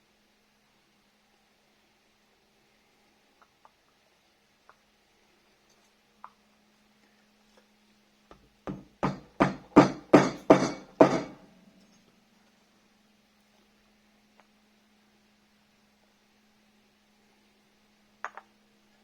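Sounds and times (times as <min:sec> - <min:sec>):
sharp ringing knocks: 0:08.7 - 0:11.4.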